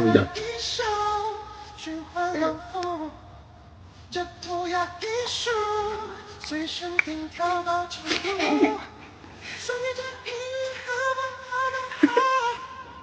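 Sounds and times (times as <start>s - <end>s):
woman singing a song: 4.6s - 8.9s.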